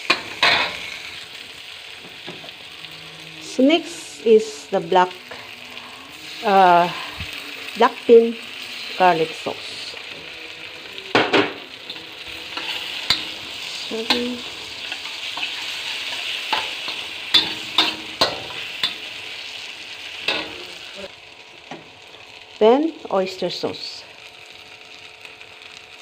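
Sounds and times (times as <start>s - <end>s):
utensil scraping a wok: 0.0s - 1.4s, 8.5s - 21.1s
food sizzling in a wok: 0.0s - 26.0s.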